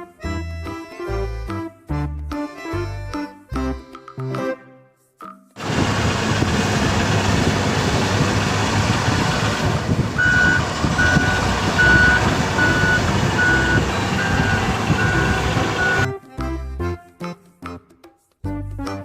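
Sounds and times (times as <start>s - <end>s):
truck engine rumbling: 5.6s - 16.1s
truck reversing alarm beeping: 7.0s - 16.1s.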